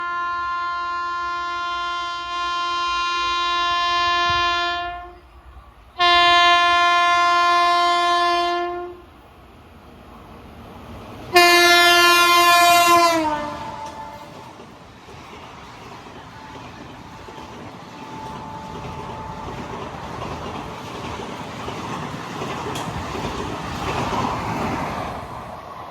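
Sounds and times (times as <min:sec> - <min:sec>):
locomotive air horn blasts: 0:00.0 - 0:05.3, 0:06.0 - 0:09.0, 0:11.3 - 0:14.6, 0:18.0 - 0:20.0
train rushing by: 0:00.0 - 0:25.9.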